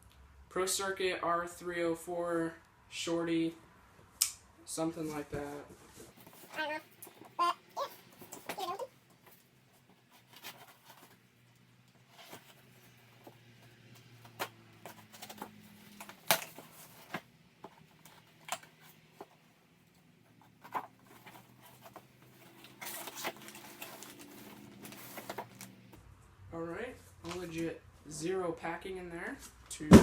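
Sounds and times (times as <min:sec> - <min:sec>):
cardboard box being opened: 0:10.0 - 0:11.2, 0:12.1 - 0:19.0, 0:20.4 - 0:25.7.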